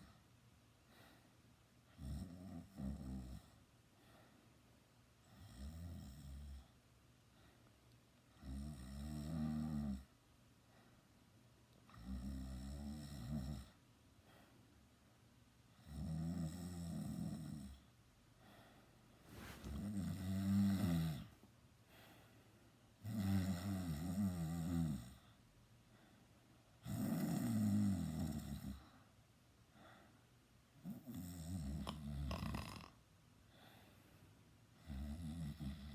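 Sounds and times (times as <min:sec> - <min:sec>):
person snoring loudly: 0:31.2 - 0:33.0.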